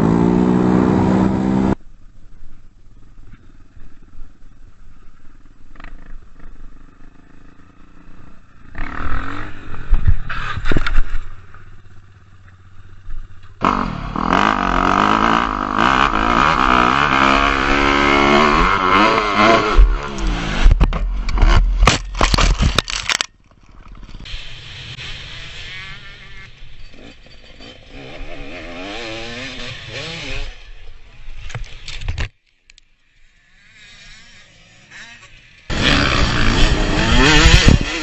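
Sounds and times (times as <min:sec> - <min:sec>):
loud engine revving: 0:00.0 - 0:01.8, 0:13.6 - 0:20.7, 0:35.7 - 0:38.0
road noise: 0:00.0 - 0:38.0.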